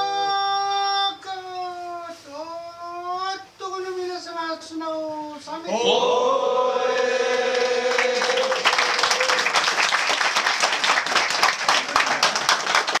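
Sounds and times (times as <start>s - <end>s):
men chanting: 0.0s - 0.6s, 5.6s - 9.4s
crowd applause: 7.0s - 13.0s.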